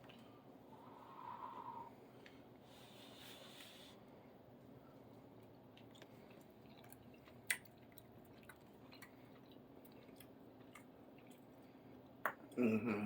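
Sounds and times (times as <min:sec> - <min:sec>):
low room hum: 0:00.0 - 0:13.0
quiet chewing: 0:05.0 - 0:12.6.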